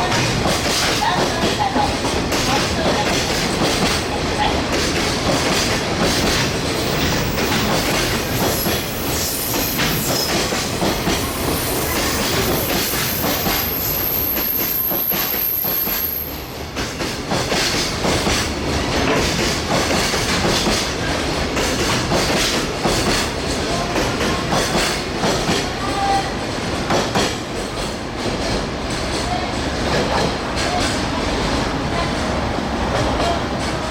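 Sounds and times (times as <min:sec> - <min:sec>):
train wheels clacking over rail joints: 0:00.0 - 0:31.2
high squeal: 0:06.8 - 0:16.5.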